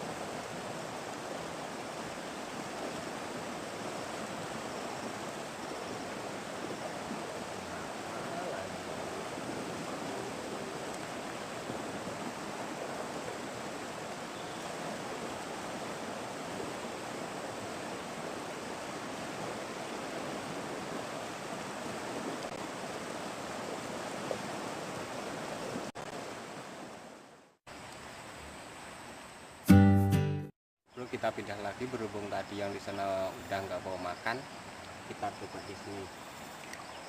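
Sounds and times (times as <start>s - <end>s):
river water rushing: 0.0s - 29.4s.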